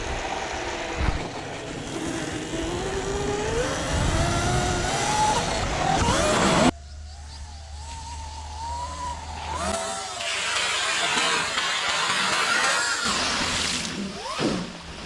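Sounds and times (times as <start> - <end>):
electric motor whining: 0.0 - 6.7, 7.3 - 13.1
wind noise: 0.9 - 6.6.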